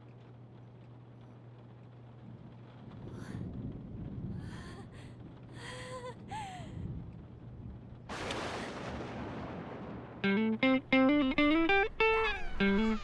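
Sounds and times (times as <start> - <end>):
low steady hum: 0.0 - 13.0
person gasping and sighing: 4.5 - 6.8.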